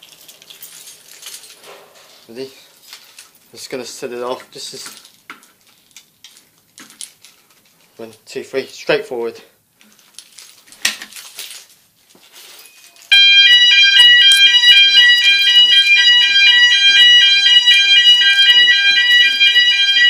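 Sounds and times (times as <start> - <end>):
fire alarm sounders: 12.8 - 20.0.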